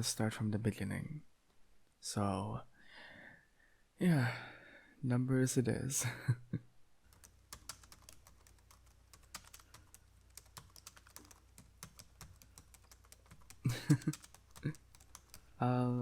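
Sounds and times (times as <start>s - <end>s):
typing on computer keyboard: 7.1s - 15.6s.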